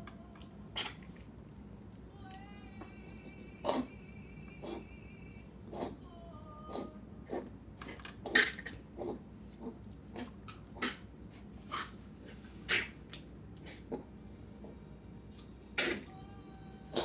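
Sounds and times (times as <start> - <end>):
puppy coughing: 0.7 - 1.1, 3.3 - 4.0, 4.6 - 4.9, 5.7 - 6.0, 6.7 - 11.1, 12.7 - 13.0, 15.7 - 16.1.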